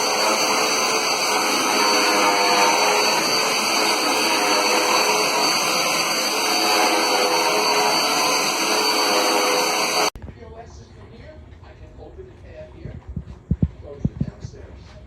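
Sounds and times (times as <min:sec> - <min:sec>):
vacuum cleaner running: 0:00.0 - 0:10.2.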